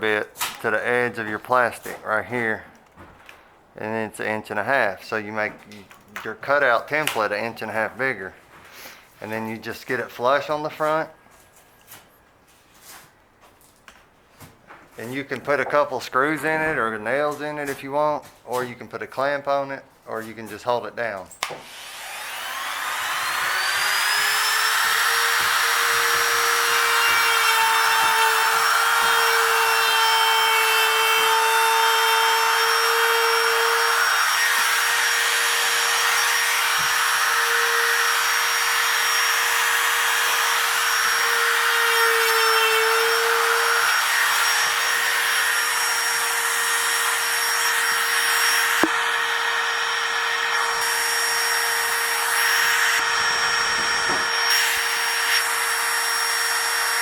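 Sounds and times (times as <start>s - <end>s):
router motor whining: 21.5s - 57.0s.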